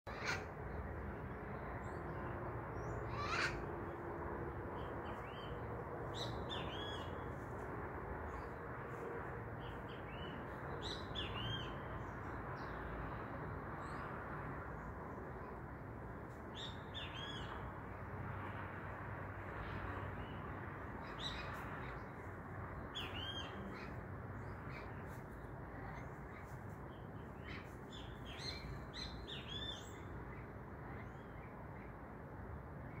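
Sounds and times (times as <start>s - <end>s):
low rushing background noise: 0.1s - 33.0s
parrot squawking: 3.1s - 3.6s.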